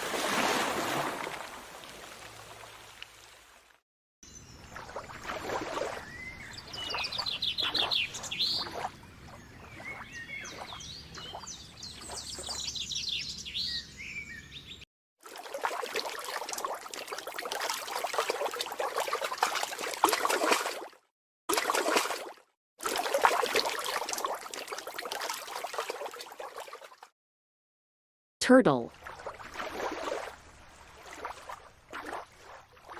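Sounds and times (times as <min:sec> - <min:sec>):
water splashing and rushing: 0:00.0 - 0:03.8, 0:04.6 - 0:12.7, 0:15.2 - 0:27.1, 0:28.9 - 0:32.9
birds chirping and trilling: 0:04.2 - 0:05.1, 0:05.8 - 0:14.8.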